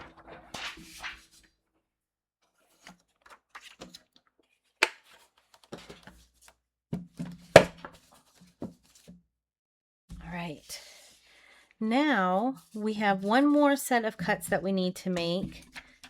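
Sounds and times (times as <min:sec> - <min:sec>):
paper taps and rustles: 0:02.7 - 0:09.2.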